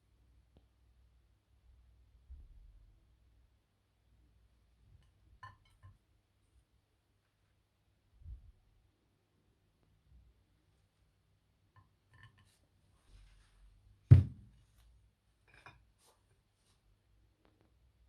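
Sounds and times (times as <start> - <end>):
solid thud: 14.1 - 14.5.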